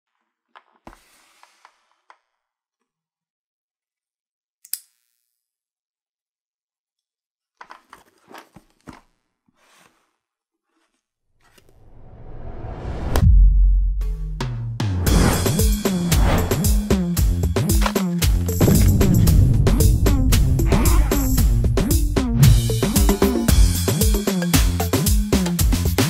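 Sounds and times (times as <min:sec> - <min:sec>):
small clicks: 0:04.6 - 0:05.3
packaging crinkling and rustling: 0:07.5 - 0:11.7
whoosh: 0:11.8 - 0:14.0, 0:15.0 - 0:16.7, 0:18.6 - 0:22.8
packaging snap: 0:17.7 - 0:19.0.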